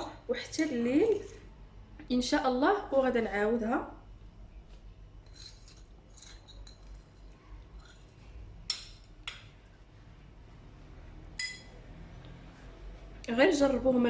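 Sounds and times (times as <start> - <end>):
spoon scraping in a dish: 5.2 - 8.2
spoon clinking against a dish: 11.4 - 11.8.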